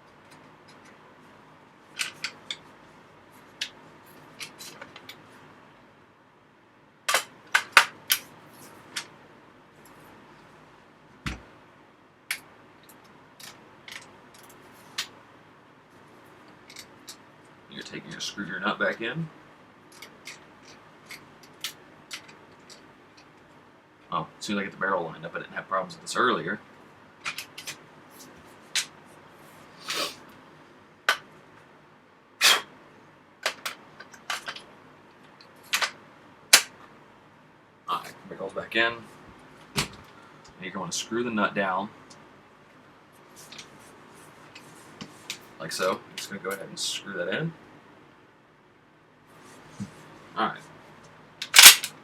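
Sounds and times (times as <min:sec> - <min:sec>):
shotgun metal clicks: 0:51.4 - 0:52.0.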